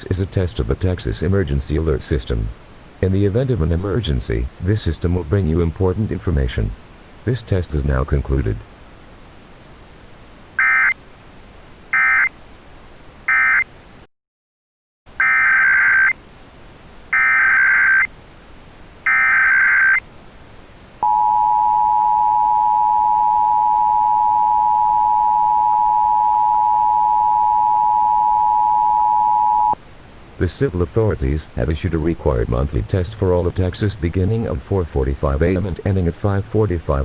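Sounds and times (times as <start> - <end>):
two-tone attention signal: 21.0 - 29.8.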